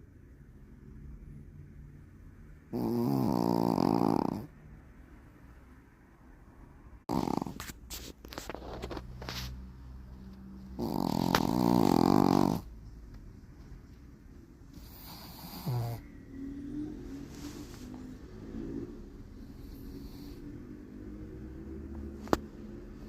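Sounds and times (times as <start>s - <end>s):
dog snoring: 2.7s - 4.5s, 7.1s - 7.8s, 10.6s - 12.7s, 14.7s - 16.1s, 17.9s - 22.2s.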